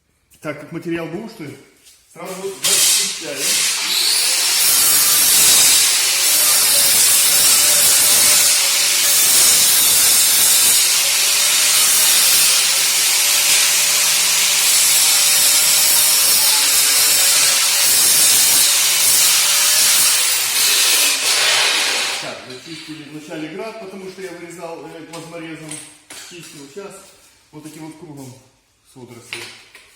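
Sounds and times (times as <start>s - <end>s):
angle grinder grinding steel: 2.3s - 22.5s.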